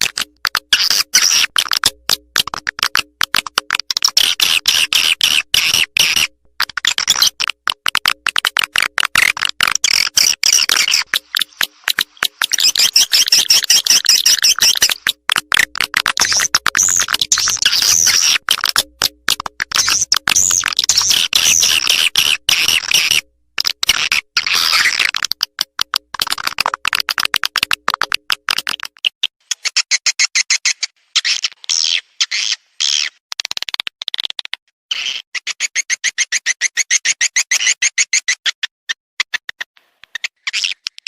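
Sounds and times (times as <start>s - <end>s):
fast clicks: 0.0s - 29.2s
swiftlets chirping and twittering: 9.8s - 18.5s.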